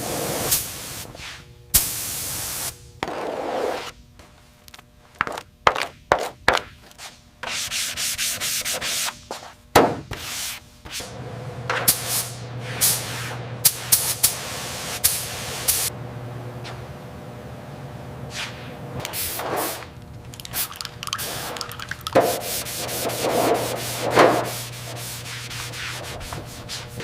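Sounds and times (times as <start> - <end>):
steady low hum: 0.0 - 3.1, 10.8 - 27.0.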